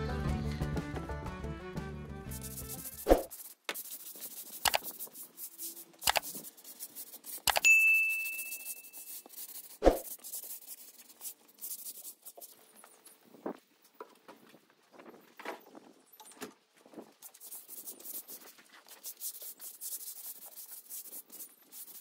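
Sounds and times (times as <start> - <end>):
metallic ring: 7.6 - 9.3.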